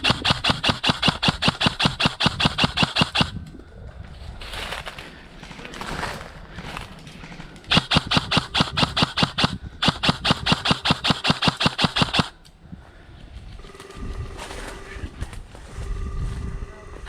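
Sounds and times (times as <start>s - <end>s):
airsoft rifle firing: 0.0s - 3.4s, 7.7s - 12.4s.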